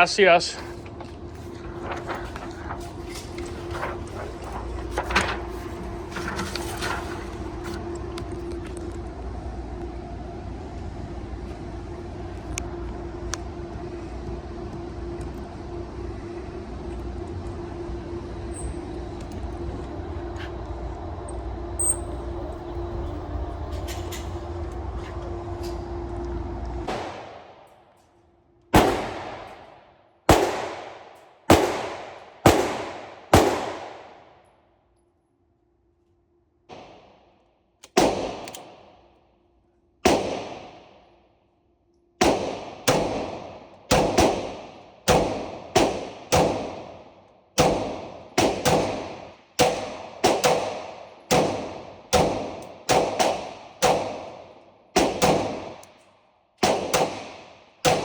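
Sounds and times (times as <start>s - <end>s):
pistol shots with echo: 28.7s - 34.2s, 38.0s - 39.0s, 40.0s - 40.9s, 42.2s - 47.0s, 47.6s - 54.3s, 55.0s - 55.8s, 56.6s - 58.0s.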